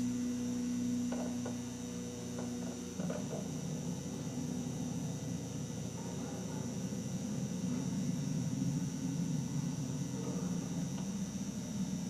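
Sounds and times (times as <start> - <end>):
electrical hum and static: 0.0 - 12.0.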